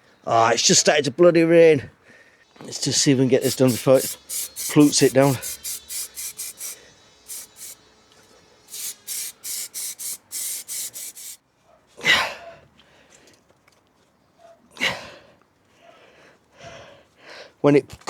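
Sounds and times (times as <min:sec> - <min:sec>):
hand brushing carpet lining: 0:03.4 - 0:07.8, 0:08.7 - 0:11.4.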